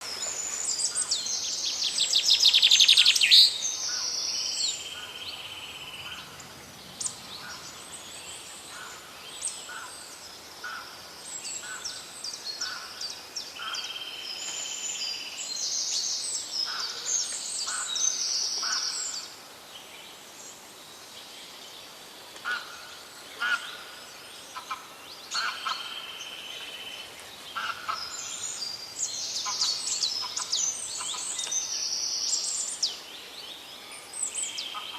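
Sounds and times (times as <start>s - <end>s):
wild birds singing: 0.0s - 34.9s.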